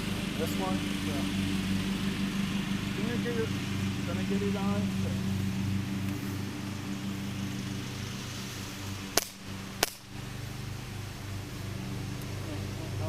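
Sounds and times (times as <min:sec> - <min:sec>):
steady low hum: 0:00.0 - 0:13.0
air pistol shots: 0:09.2 - 0:10.1.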